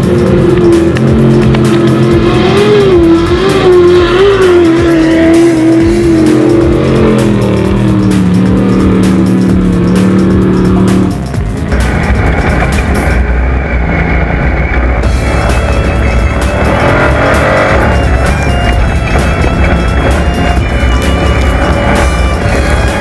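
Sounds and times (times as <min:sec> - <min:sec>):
background music: 0:00.0 - 0:23.0
race engine at high revs: 0:00.0 - 0:23.0.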